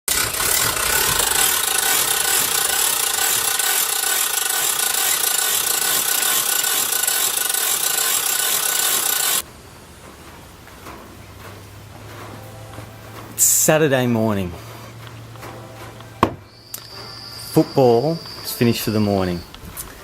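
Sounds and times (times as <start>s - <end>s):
loud rasping noise with whine: 0.0s - 9.5s.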